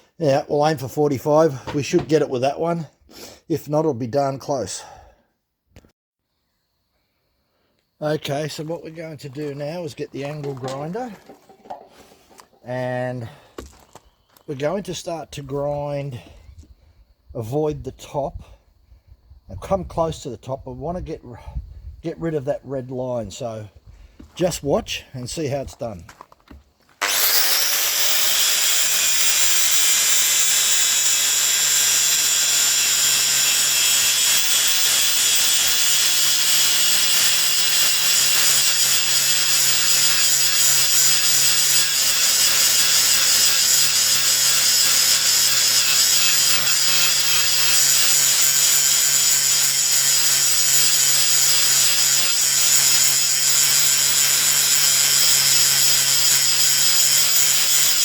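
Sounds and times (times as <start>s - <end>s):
angle grinder grinding steel: 0.6s - 2.4s, 8.3s - 13.8s, 27.0s - 58.0s.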